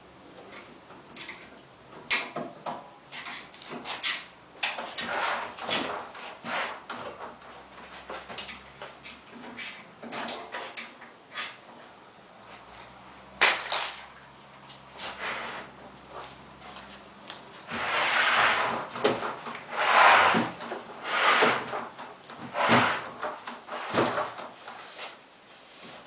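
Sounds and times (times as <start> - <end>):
loud rough scraping: 4.9 - 7.0, 15.0 - 16.3, 17.6 - 24.4.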